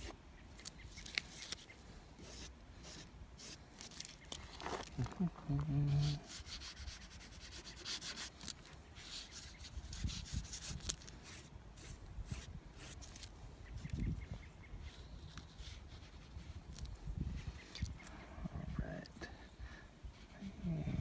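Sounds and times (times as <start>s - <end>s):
rubbing and scraping on painting: 0.0s - 13.3s, 14.8s - 18.0s.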